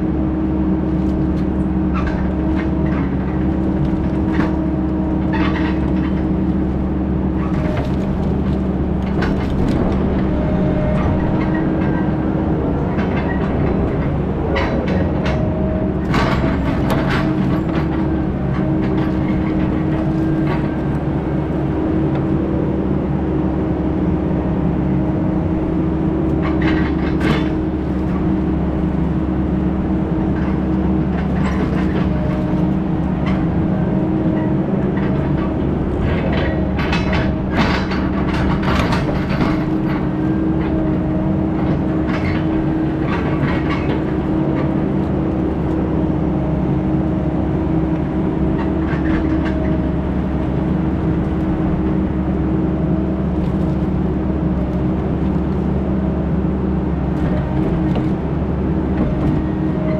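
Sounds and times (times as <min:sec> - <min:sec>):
heavy diesel engine running: 0:00.0 - 0:59.9
rattles and knocks: 0:00.8 - 0:22.4, 0:26.1 - 0:45.7.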